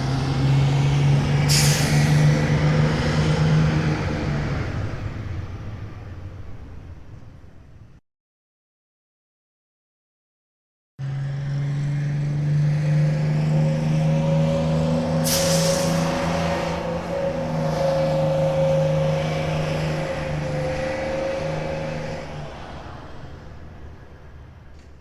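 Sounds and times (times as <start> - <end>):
bus engine running: 0.0 - 8.0, 11.0 - 25.0
air brake hiss: 1.4 - 2.2, 15.2 - 16.4.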